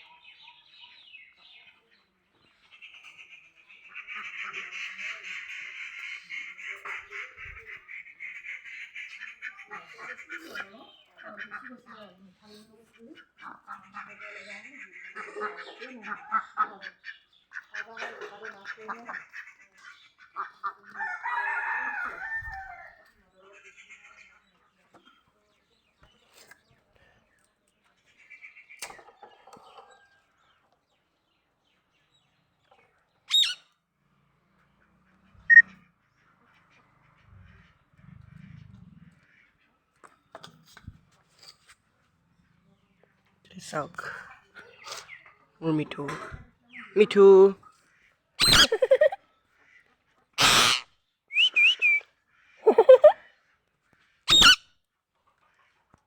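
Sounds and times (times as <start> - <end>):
parrot squawking: 33.3 - 33.6, 48.4 - 49.2, 50.4 - 52.0, 52.6 - 53.2, 54.3 - 54.6
parrot whistling: 48.4 - 49.1, 50.4 - 52.0, 54.3 - 54.6
parrot chattering: 48.4 - 49.2, 50.4 - 52.0, 52.7 - 53.2, 54.3 - 54.6.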